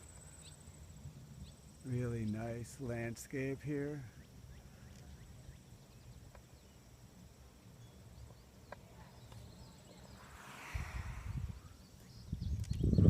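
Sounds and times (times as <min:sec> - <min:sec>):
faint high chirps: 0:00.0 - 0:02.8
low rumble: 0:09.9 - 0:12.4.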